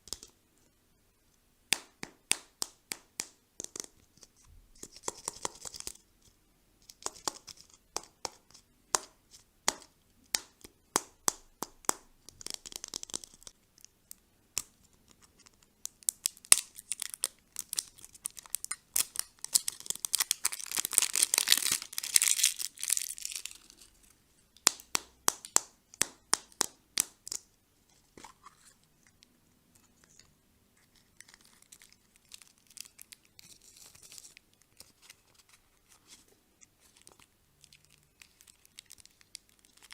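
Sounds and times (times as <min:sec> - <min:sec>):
plastic packaging crinkling: 0:16.2 - 0:23.9, 0:31.0 - 0:36.2, 0:36.8 - 0:39.9.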